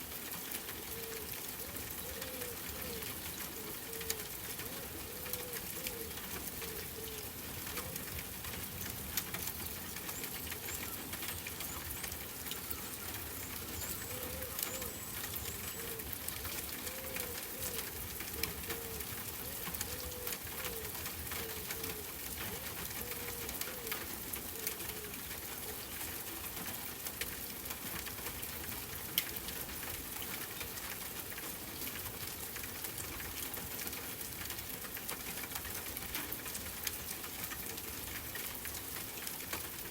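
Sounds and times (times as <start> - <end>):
rain hissing: 0.0 - 39.9
dove cooing: 0.6 - 8.6, 9.6 - 26.1
faint high bird chirps: 10.2 - 16.0.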